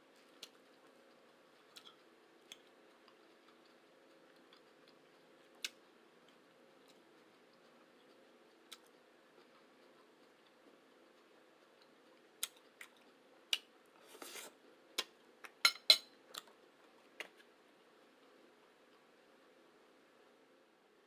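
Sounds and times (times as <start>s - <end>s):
cutlery scraping plate: 14.0s - 14.5s
cutlery clinking against plate: 15.6s - 16.1s.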